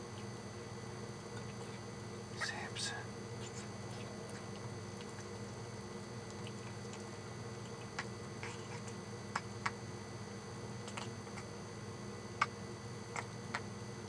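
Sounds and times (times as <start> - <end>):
steady low hum: 0.0 - 14.0
pet eating wet clicks: 1.3 - 1.8, 2.4 - 9.8, 10.8 - 11.6, 12.3 - 13.7.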